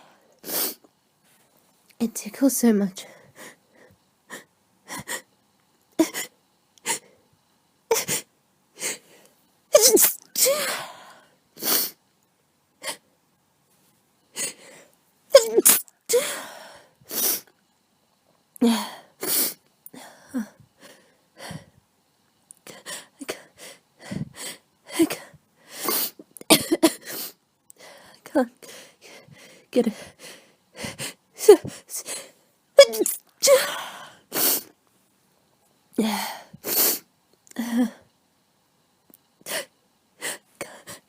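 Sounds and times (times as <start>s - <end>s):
person sneezing: 9.7s - 10.9s, 15.4s - 16.4s.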